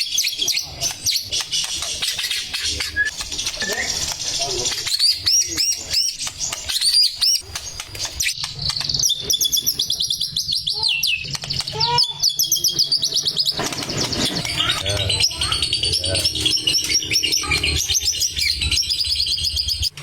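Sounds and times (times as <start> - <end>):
bird singing whistled trills: 2.0 - 4.0, 8.2 - 19.9.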